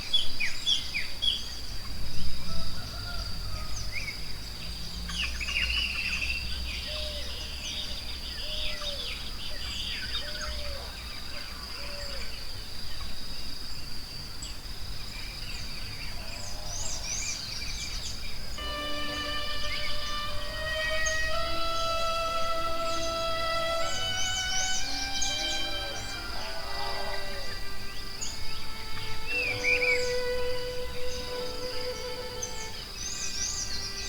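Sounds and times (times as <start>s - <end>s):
insect drone: 0.1s - 34.0s
low animal call: 18.6s - 32.8s
soft instrumental music: 18.6s - 34.0s
birds chirping and calling: 18.7s - 34.0s.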